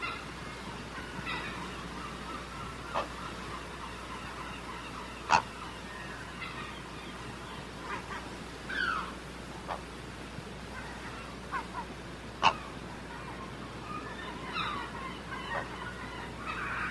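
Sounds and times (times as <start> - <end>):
bird calls: 0.0 - 10.0, 10.7 - 16.9
steady background hiss: 0.0 - 16.9.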